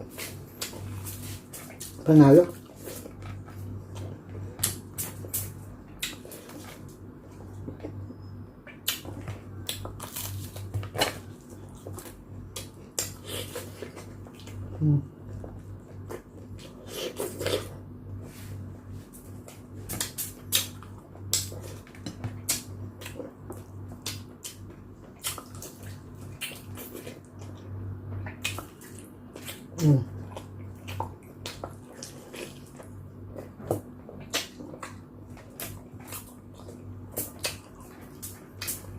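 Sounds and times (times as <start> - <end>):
steady low hum: 0.0 - 38.9
wet chewing and slurping: 8.8 - 14.7, 19.4 - 38.9.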